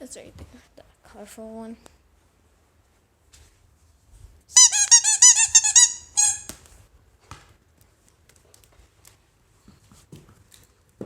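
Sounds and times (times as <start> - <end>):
squeaky toy ball squeaking: 4.6 - 6.5.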